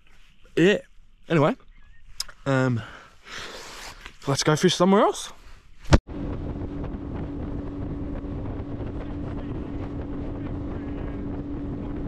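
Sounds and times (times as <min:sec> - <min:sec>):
wind rushing over microphone: 0:06.0 - 0:12.0
motor humming with low rumble: 0:06.1 - 0:12.0.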